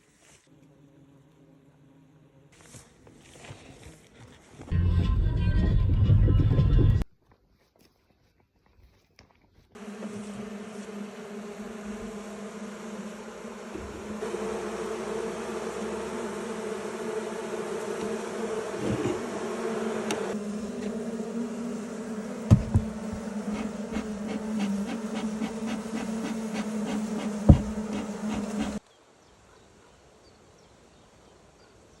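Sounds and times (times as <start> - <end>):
honeybees buzzing: 0.5 - 4.7, 9.8 - 28.8
sharp knocks: 22.5 - 23.7, 26.9 - 28.8.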